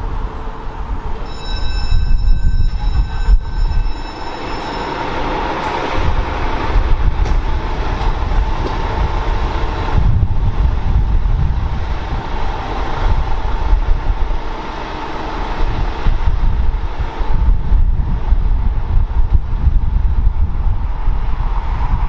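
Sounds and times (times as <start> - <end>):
wind buffeting microphone: 0.0 - 22.0
heavy vehicle engine rumbling: 2.5 - 22.0.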